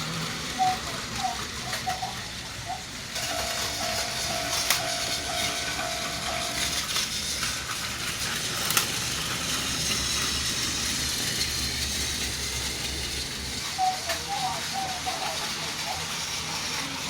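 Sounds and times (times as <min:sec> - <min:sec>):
toy trains whirring: 0:00.0 - 0:17.0
electronic crossing bell: 0:03.2 - 0:06.7.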